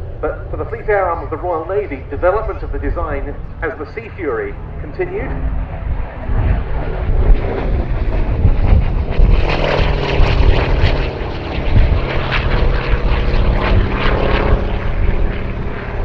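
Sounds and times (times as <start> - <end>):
propeller aircraft engine droning: 0.0 - 16.0.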